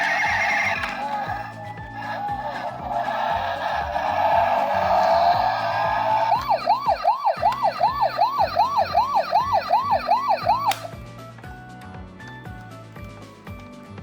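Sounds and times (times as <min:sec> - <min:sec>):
toy electronic siren: 0:00.0 - 0:10.9
music with steady beat: 0:00.0 - 0:14.0.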